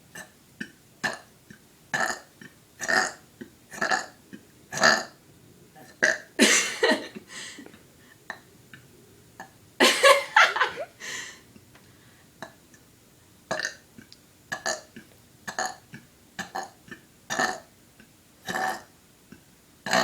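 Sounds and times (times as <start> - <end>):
person burping: 17.3 - 17.6, 18.5 - 18.9.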